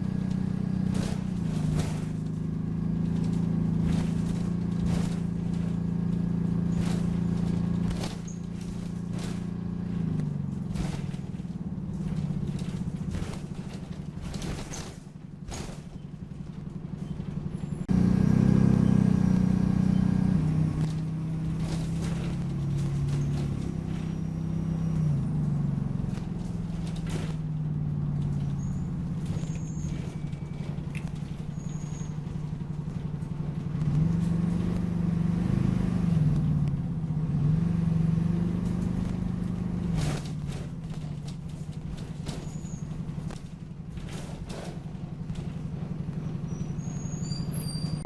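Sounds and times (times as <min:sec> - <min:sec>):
bus engine running: 0:00.0 - 0:48.0
faint high squeaks: 0:03.0 - 0:09.8, 0:16.9 - 0:27.4, 0:28.1 - 0:32.6, 0:41.4 - 0:43.3, 0:44.0 - 0:48.0.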